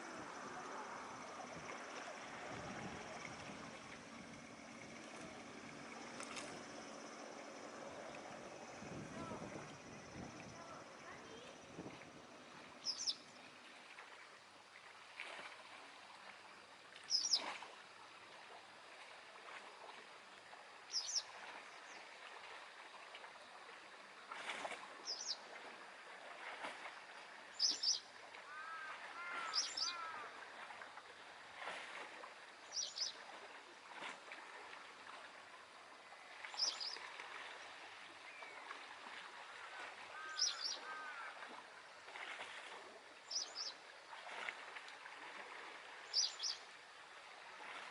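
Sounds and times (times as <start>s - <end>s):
small waves lapping: 0.0s - 47.9s
bird short high call: 27.6s - 30.2s, 40.2s - 41.3s.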